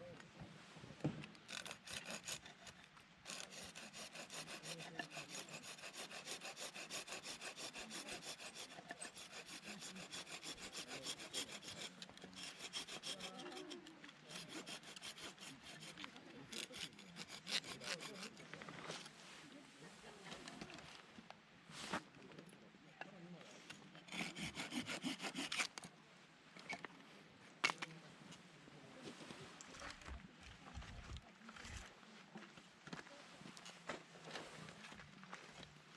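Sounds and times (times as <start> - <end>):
hand saw cutting wood: 1.4 - 19.1, 24.0 - 25.9.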